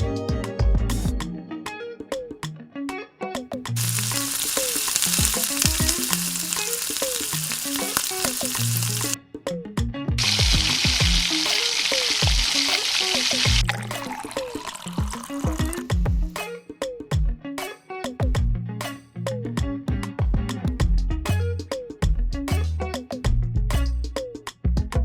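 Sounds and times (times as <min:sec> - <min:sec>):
music with guitar and bass: 0:00.0 - 0:25.0
bright high hiss: 0:03.8 - 0:09.2, 0:10.2 - 0:15.9
crackling hiss: 0:03.8 - 0:09.2, 0:10.2 - 0:15.9.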